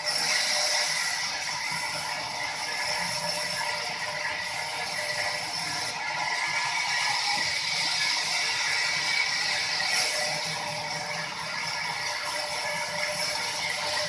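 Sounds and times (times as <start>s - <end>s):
sawmill machinery rattling and whining: 0.0s - 14.0s.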